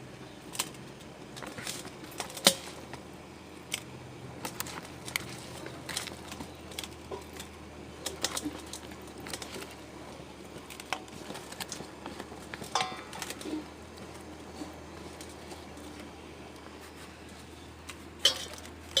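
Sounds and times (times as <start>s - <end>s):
bowl and utensils clicking: 18.2s - 19.0s.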